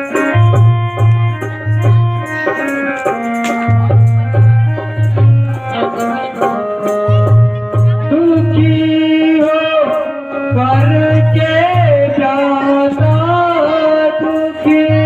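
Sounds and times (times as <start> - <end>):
low drum beat: 0.1 - 9.4.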